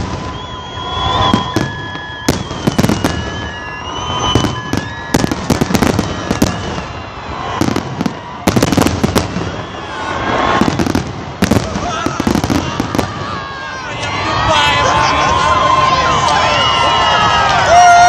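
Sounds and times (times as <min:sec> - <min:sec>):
fireworks bangs and crackles: 0:00.0 - 0:18.0.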